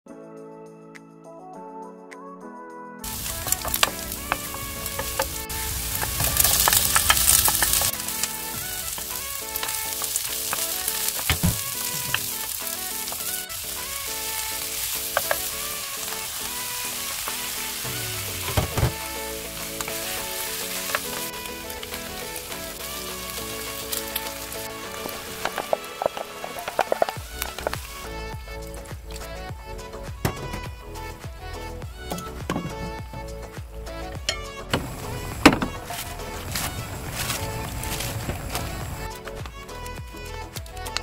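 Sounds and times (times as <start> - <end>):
food sizzling in hot oil: 3.0 - 29.5, 34.3 - 39.9
oil crackling and popping: 3.0 - 29.5, 34.7 - 41.0.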